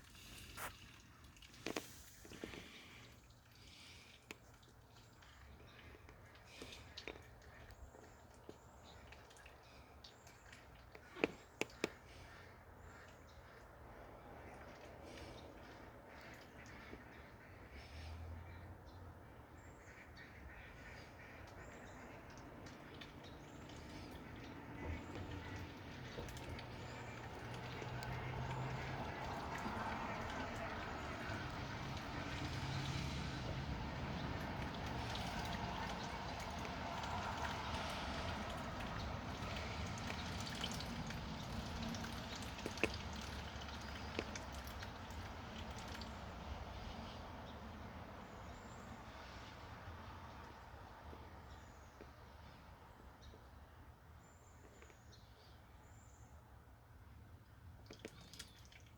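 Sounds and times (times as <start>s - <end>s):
duck bill splashing in water: 19.9s - 47.2s, 57.8s - 58.9s.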